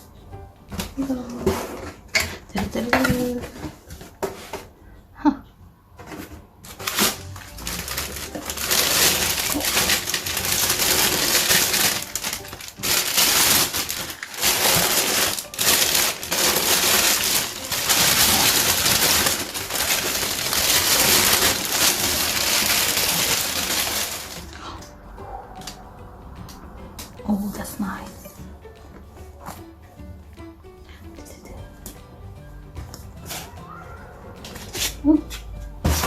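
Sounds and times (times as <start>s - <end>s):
packaging crinkling and rustling: 6.1s - 24.7s.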